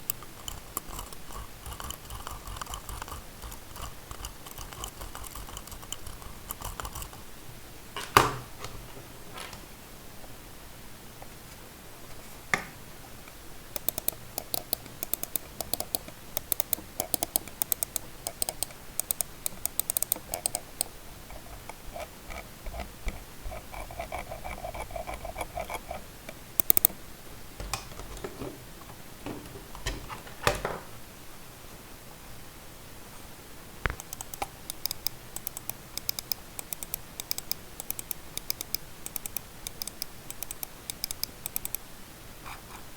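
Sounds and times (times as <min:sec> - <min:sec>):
scroll wheel ticks: 0:00.0 - 0:07.2, 0:13.7 - 0:27.0, 0:33.9 - 0:41.8.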